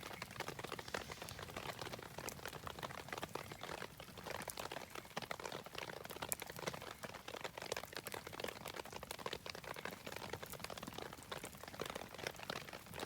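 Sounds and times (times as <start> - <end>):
campfire crackling: 0.0 - 4.2
rain pattering: 0.0 - 13.0.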